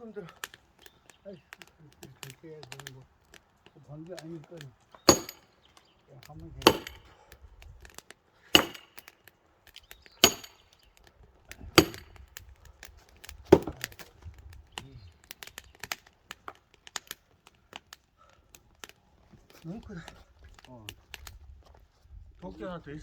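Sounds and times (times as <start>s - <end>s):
light knocks and crackles: 0.2s - 8.2s
axe striking a log: 5.1s - 5.5s, 6.6s - 7.1s, 8.5s - 9.2s, 10.2s - 10.7s, 11.8s - 12.2s, 13.5s - 14.0s.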